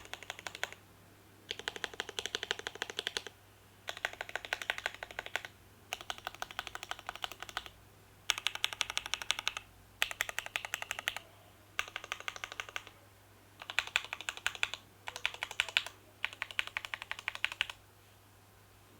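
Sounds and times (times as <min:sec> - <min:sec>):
mechanical keyboard keystrokes clacking: 0:00.0 - 0:00.8, 0:01.5 - 0:03.3, 0:03.9 - 0:07.7, 0:08.3 - 0:11.2, 0:11.8 - 0:12.9, 0:13.6 - 0:17.8.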